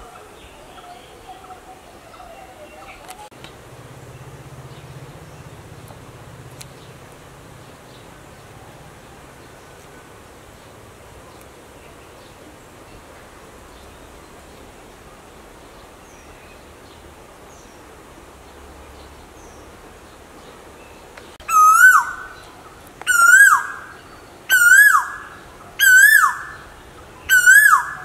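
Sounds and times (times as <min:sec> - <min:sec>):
bird's whistled call: 0:21.4 - 0:22.4, 0:23.1 - 0:28.0.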